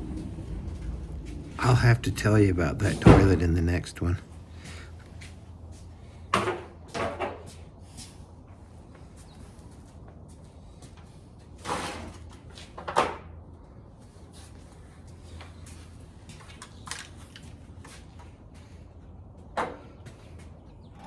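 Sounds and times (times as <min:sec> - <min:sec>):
low steady hum: 0:00.0 - 0:06.2
knocks and clunks: 0:00.5 - 0:06.0.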